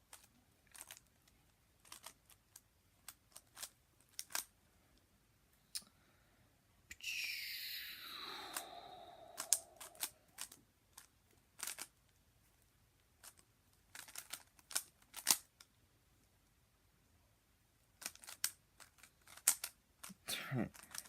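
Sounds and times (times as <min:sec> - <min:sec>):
speed cube clicking: 0:00.1 - 0:01.0, 0:01.8 - 0:02.2, 0:03.3 - 0:04.5, 0:09.3 - 0:11.9, 0:13.9 - 0:15.5, 0:18.0 - 0:21.0.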